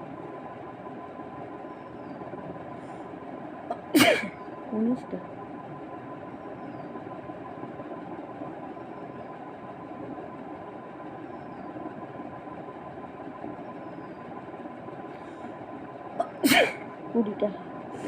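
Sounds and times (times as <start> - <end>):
background hum and hiss: 0.0 - 18.0
faint constant high tone: 0.0 - 18.0.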